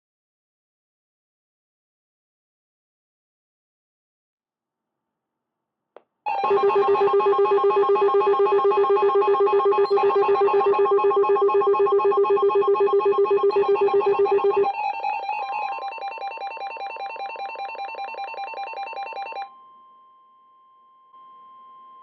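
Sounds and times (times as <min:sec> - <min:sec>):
warbling electronic alert tone: 0:06.3 - 0:19.5.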